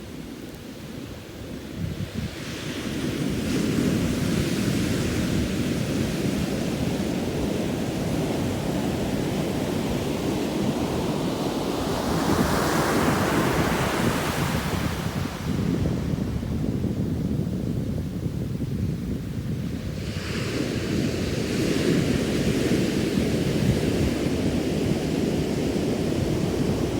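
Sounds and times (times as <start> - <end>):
waves breaking on beach: 0.0 - 15.5
wind on microphone: 0.0 - 26.9.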